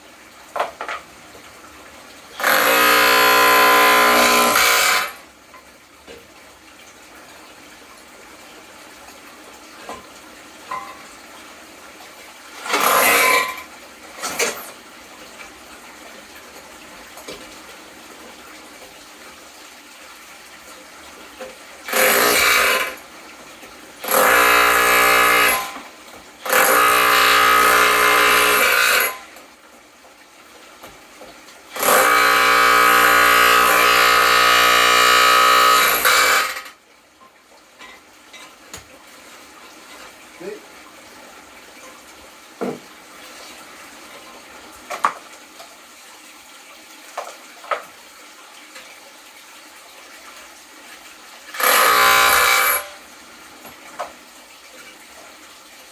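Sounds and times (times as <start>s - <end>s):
impact drill motor whine: 2.4s - 5.2s, 21.9s - 23.0s, 24.1s - 25.8s, 26.5s - 29.2s, 31.8s - 36.7s, 51.6s - 52.9s.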